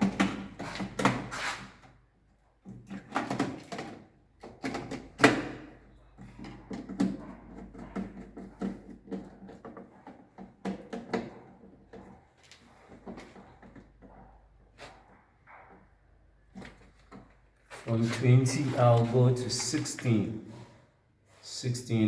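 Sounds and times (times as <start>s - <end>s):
plastic circuit breakers clacking: 2.7s - 9.8s.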